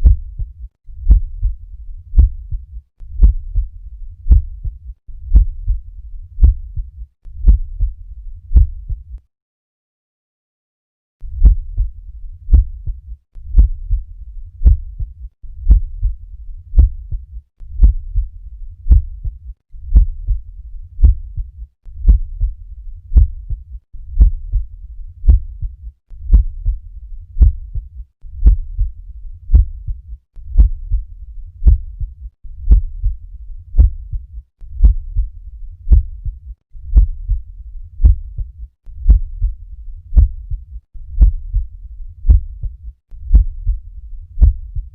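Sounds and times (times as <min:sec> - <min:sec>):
heartbeat lub-dub: 0:00.0 - 0:09.2, 0:11.2 - 0:44.9
steady low rumble: 0:00.0 - 0:09.2, 0:11.2 - 0:44.9.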